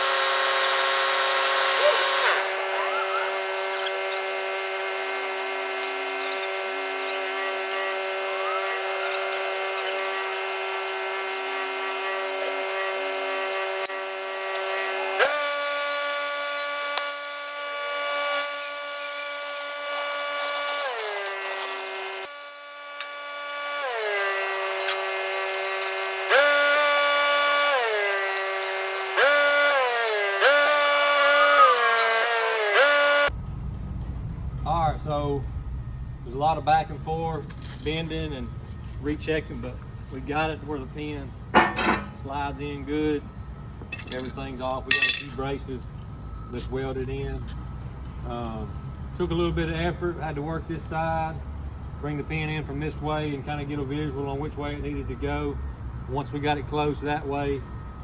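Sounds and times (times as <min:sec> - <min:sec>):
power tool motor whining: 0:00.0 - 0:33.4.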